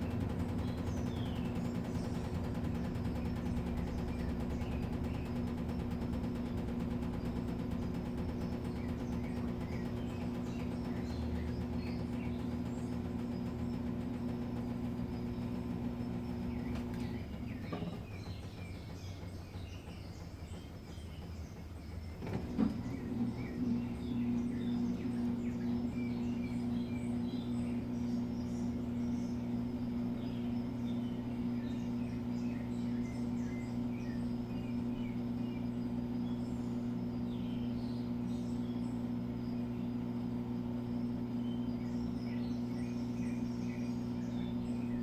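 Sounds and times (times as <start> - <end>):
washing machine motor hum: 0.0 - 45.0.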